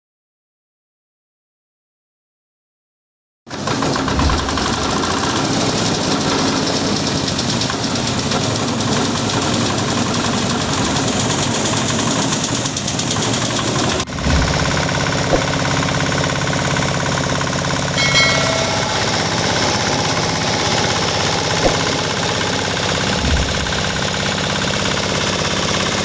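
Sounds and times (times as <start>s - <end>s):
grass chopper machine running: 3.5s - 26.0s.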